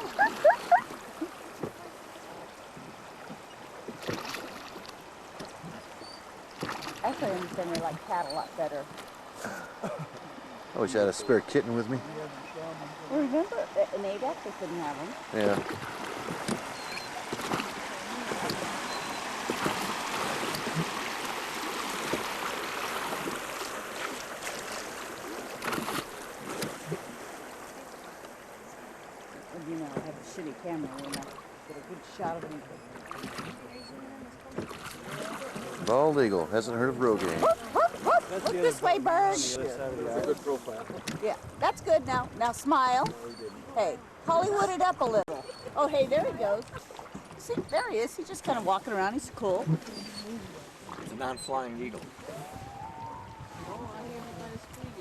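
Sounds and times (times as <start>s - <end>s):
river water rushing: 0.0s - 41.8s
water splashes: 0.0s - 55.0s.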